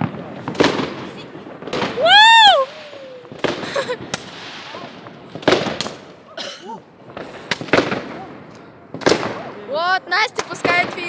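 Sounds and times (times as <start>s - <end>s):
fireworks bursting: 0.0s - 11.0s
shrill rising firework shriek: 1.8s - 3.7s.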